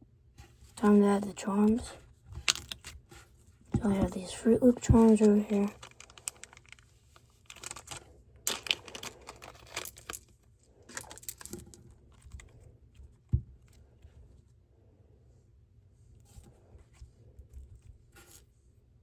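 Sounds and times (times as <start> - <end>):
crinkling and rustling: 0.4 - 14.5.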